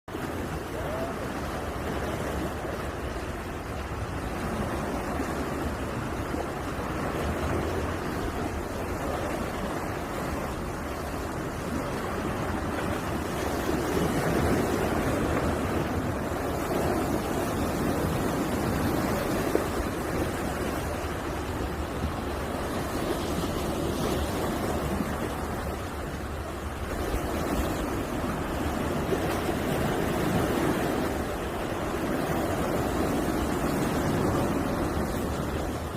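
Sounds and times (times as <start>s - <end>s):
sea surf washing: 0.1s - 35.9s
wind on microphone: 0.1s - 35.9s.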